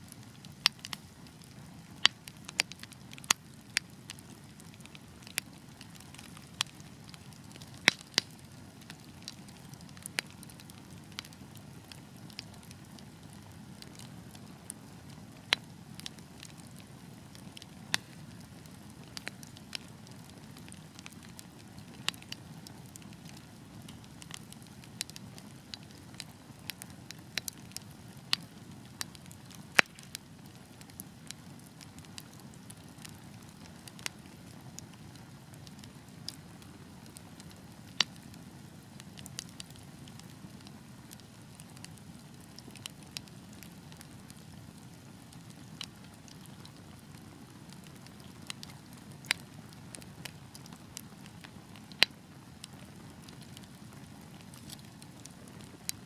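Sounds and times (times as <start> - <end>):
fire crackling and popping: 0.0 - 56.0.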